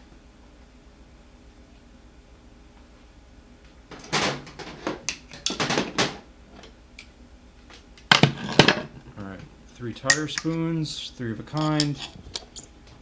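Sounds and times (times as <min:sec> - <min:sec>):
tire spoons clanking and scraping: 0:08.1 - 0:12.8.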